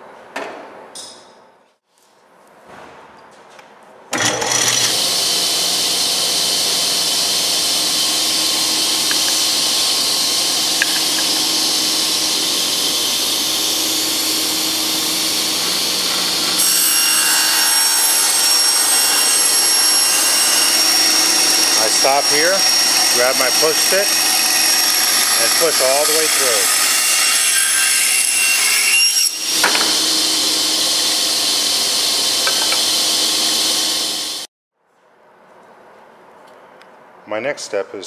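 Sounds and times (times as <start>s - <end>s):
table saw running: 4.2s - 34.5s.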